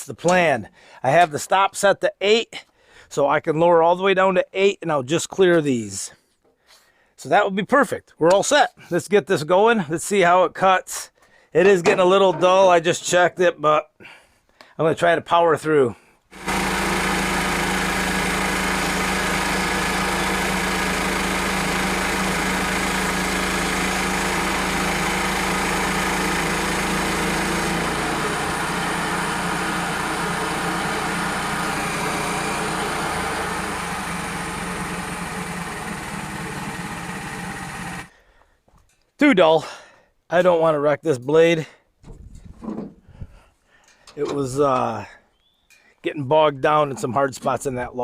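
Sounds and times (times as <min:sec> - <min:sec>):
band sawmill cutting log: 0:16.3 - 0:38.1
gas engine running: 0:16.3 - 0:38.1.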